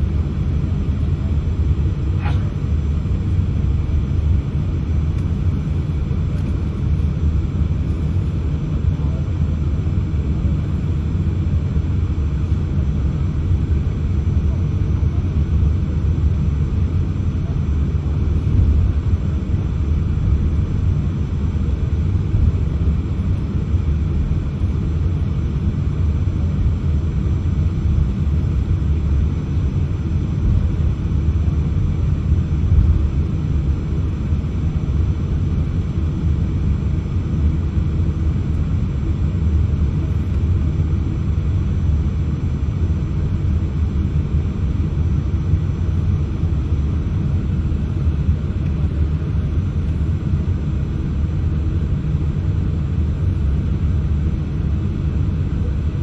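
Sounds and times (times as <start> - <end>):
airliner engines idling in cabin: 0.0 - 56.0
airliner rolling on taxiway: 0.0 - 56.0.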